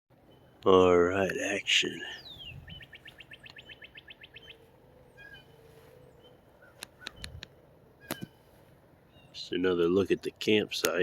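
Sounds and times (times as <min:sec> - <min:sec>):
songbirds trilling and chirping: 0:00.1 - 0:11.0
sharp clicks: 0:06.8 - 0:08.4.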